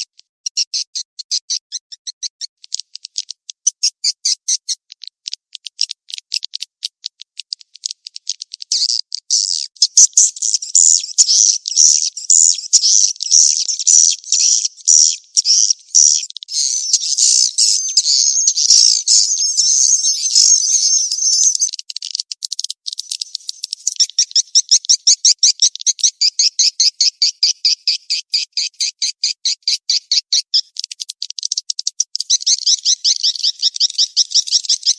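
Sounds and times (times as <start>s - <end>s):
swiftlet chirps and twittering: 8.7s - 34.9s.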